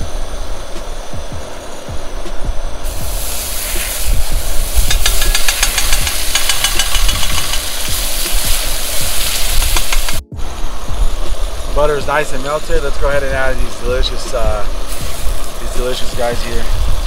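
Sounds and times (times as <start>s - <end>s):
butter sizzling in a pan: 2.8s - 10.2s, 14.2s - 16.6s
low steady rumble: 10.2s - 17.0s.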